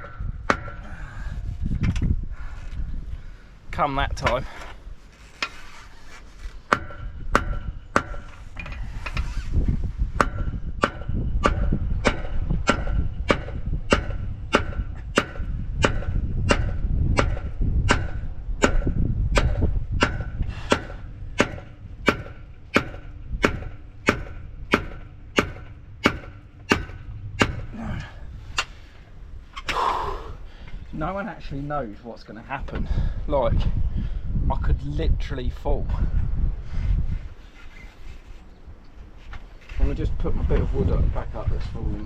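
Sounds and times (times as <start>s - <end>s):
low rumble: 6.9s - 30.9s.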